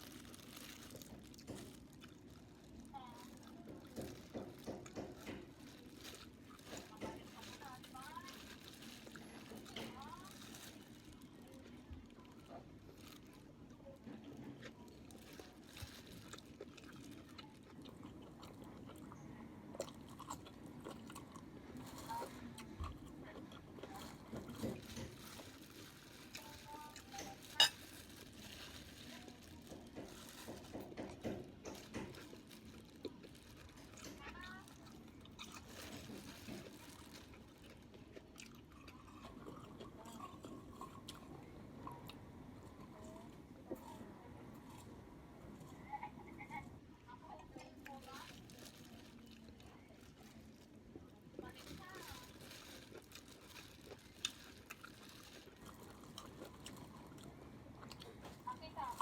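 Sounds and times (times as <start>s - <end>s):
person chewing food: 14.1s - 28.9s, 29.5s - 42.8s, 52.8s - 58.4s.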